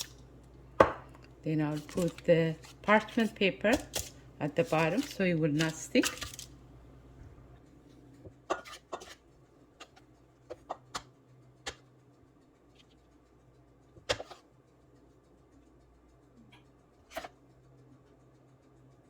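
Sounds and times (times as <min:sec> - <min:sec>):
parchment paper rustling: 0:01.6 - 0:06.5.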